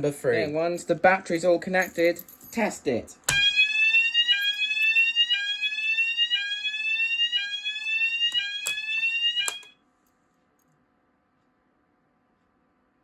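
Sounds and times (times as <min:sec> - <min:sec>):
fire alarm rising sweep tone: 0:03.3 - 0:09.7.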